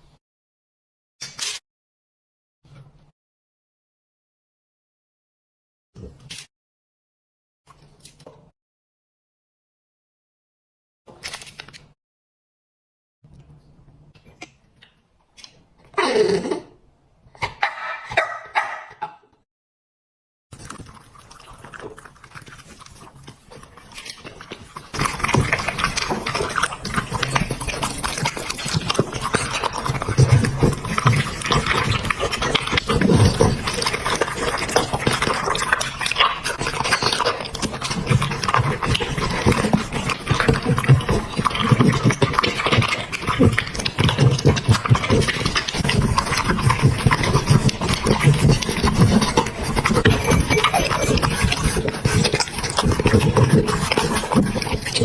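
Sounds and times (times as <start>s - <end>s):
dog eating crunching and smacking: 20.5s - 55.0s
dog panting: 45.8s - 54.4s.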